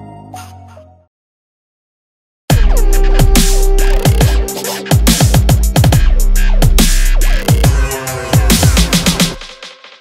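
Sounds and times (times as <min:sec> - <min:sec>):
electronic dance music: 0:02.5 - 0:10.0.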